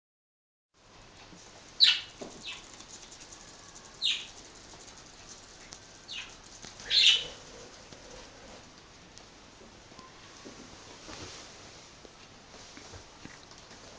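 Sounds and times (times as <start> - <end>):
budgies chirping: 1.8 - 2.6, 4.0 - 4.3, 6.1 - 7.4.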